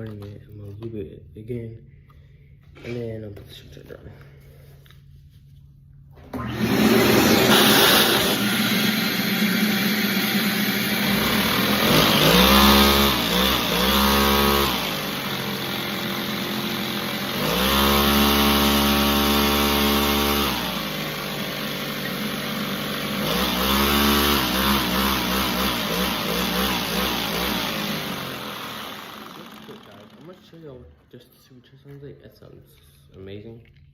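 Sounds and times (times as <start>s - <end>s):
small engine revving: 6.4s - 30.7s.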